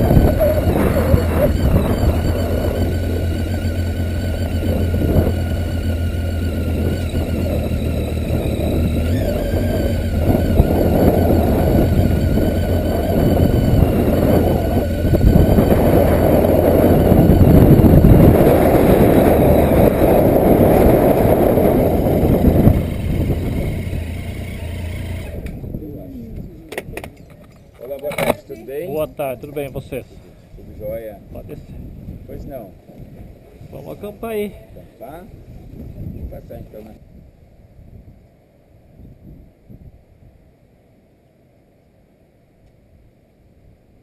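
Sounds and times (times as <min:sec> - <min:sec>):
motorcycle engine running: 0:00.0 - 0:26.0
wind rushing over microphone: 0:00.0 - 0:27.5, 0:28.2 - 0:40.4.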